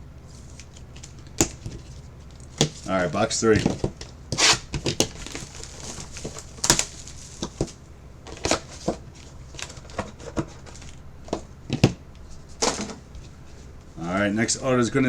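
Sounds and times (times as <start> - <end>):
packaging crinkling: 0.2 - 3.7, 4.3 - 11.0.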